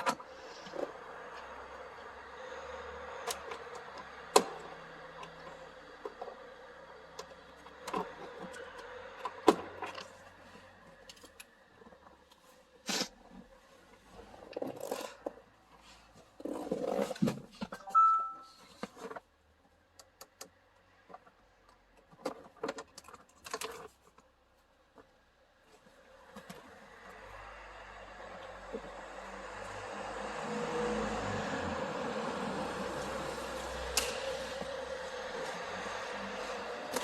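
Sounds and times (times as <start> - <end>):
hands handling plastic parts: 33.2 - 37.0.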